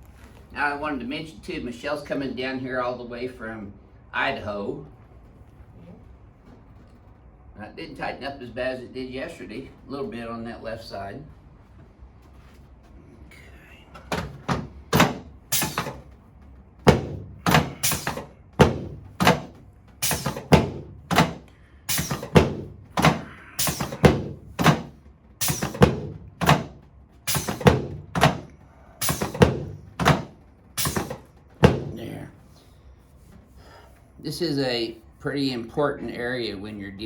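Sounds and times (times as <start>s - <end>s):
dull thuds on padded table: 16.9s - 32.1s.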